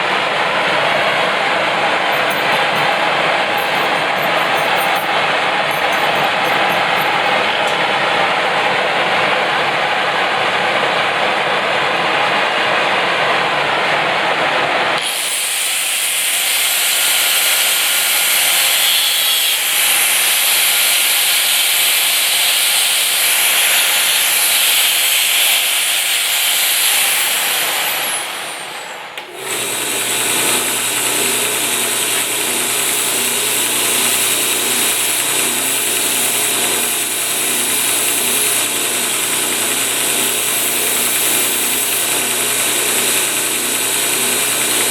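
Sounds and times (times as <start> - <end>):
power tool running: 2.0 - 8.6, 15.0 - 44.9
fast even rattle: 2.1 - 8.2.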